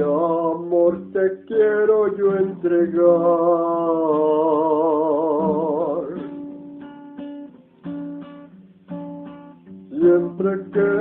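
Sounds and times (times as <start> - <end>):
man singing with vibrato: 0.0 - 6.5, 9.9 - 11.0
acoustic guitar strumming chords: 0.0 - 11.0.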